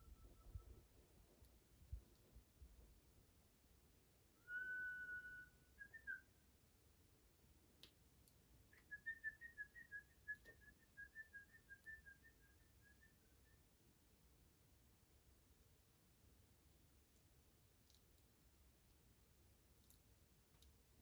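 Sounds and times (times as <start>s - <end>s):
songbird whistling: 4.4s - 6.3s, 8.7s - 13.6s.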